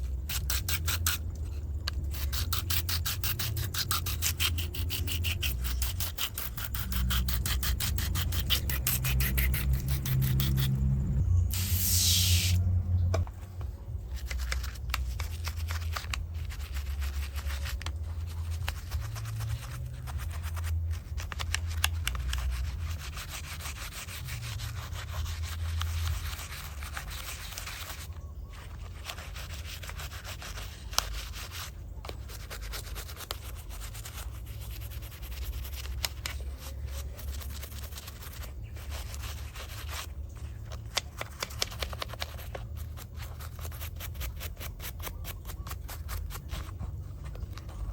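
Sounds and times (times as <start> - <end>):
low handling rumble: 6.5 - 14.2
scrubbing on a toy car: 14.1 - 47.9.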